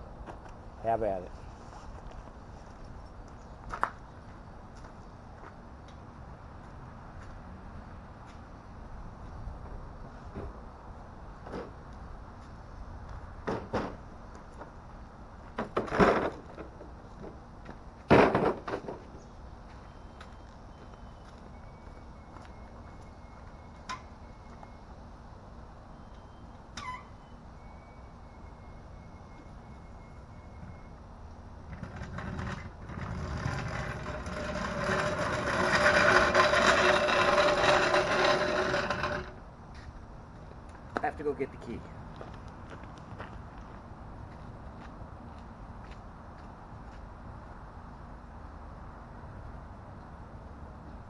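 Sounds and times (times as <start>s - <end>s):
faint steady squeal: 19.7s - 39.4s
metal equipment clattering scrapes: 31.7s - 39.4s.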